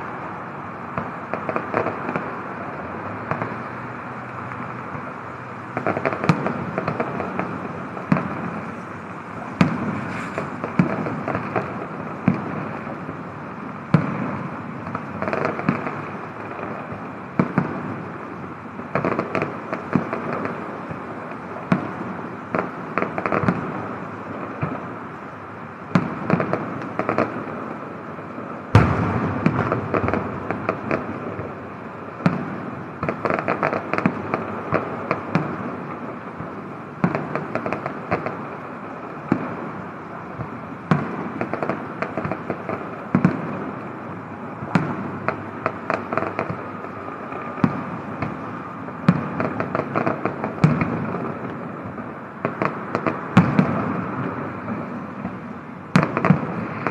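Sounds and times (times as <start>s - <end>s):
fireworks bursting: 0.0s - 56.9s.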